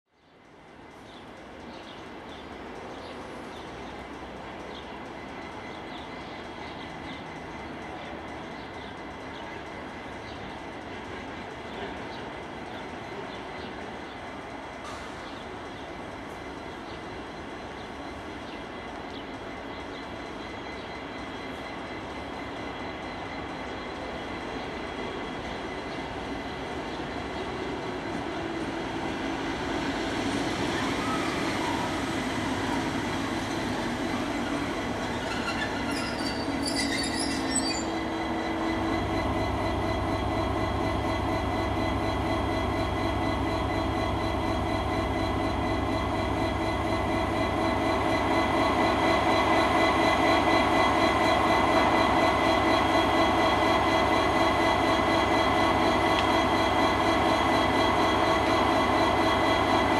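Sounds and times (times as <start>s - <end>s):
diesel locomotive engine running: 0.4s - 59.9s
high metallic squeal: 35.1s - 38.1s.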